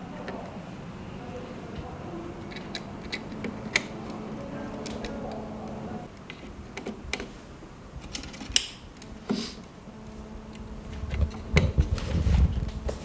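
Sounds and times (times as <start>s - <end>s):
wire connectors clicking into place: 2.4s - 4.2s, 8.0s - 9.1s.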